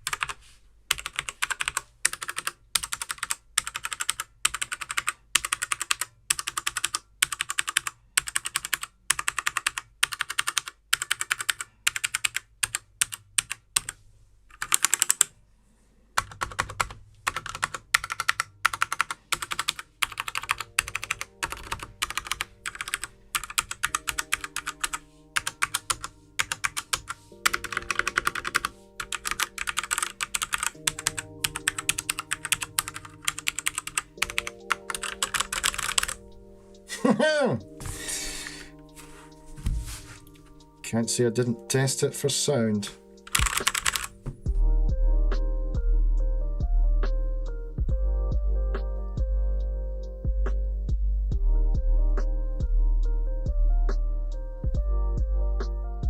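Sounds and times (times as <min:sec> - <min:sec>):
mechanical keyboard typing: 0:00.0 - 0:15.3, 0:16.2 - 0:36.2, 0:43.2 - 0:44.2
soft background music: 0:16.2 - 0:56.0.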